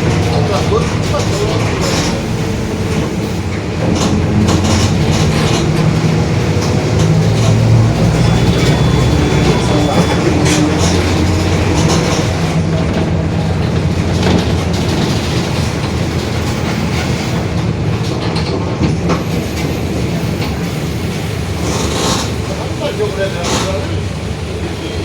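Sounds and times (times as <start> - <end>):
diesel engine drone: 0.0 - 17.8.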